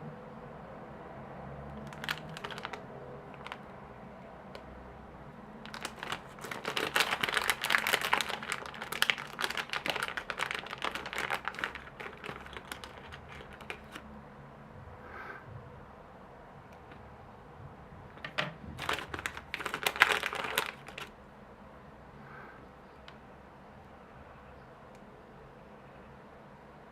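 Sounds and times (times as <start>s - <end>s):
crinkling: 1.8s - 3.7s, 5.6s - 14.1s, 18.1s - 21.2s.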